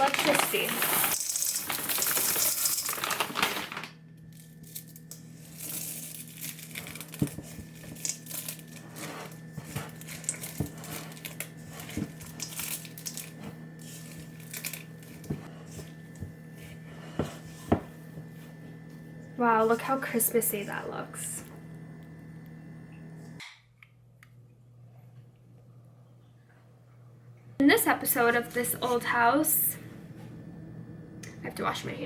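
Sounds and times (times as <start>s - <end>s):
candy clicking against bowl: 0.0s - 3.6s
candies rattling into bowl: 0.0s - 15.3s
spatula scraping dough: 8.7s - 18.7s.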